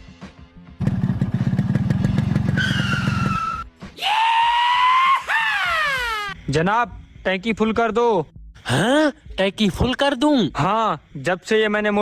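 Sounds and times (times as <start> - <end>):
motorcycle engine revving: 0.8 - 3.6.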